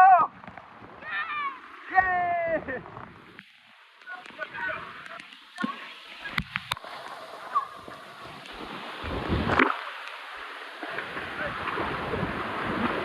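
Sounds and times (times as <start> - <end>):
waterfall rushing: 3.7 - 13.0
wind buffeting microphone: 11.4 - 13.0.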